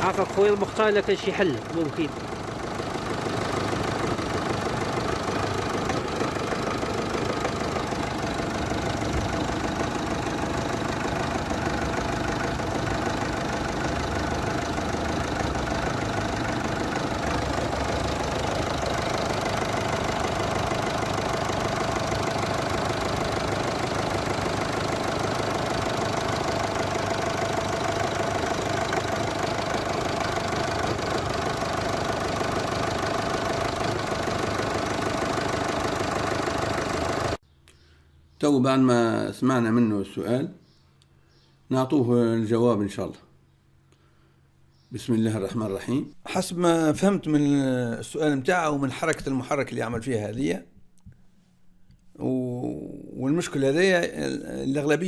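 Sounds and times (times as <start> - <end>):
diesel engine idling: 0.0 - 37.4.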